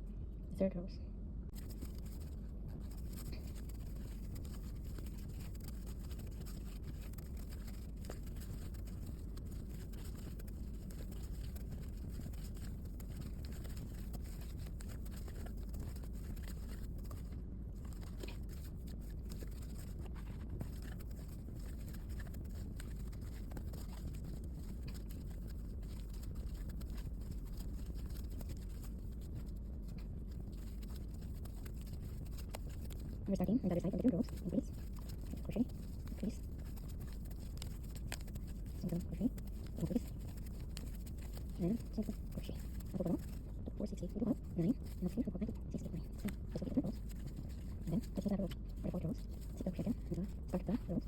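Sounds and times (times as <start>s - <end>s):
low background rumble: 0.0s - 51.0s
faint scratching: 1.5s - 51.0s.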